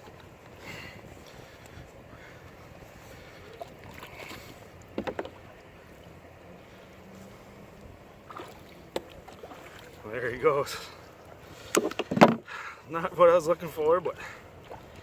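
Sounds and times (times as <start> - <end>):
water noise: 0.0 - 15.0
wind: 0.0 - 15.0
sharp knocks on kayak: 5.0 - 5.4, 11.8 - 12.4.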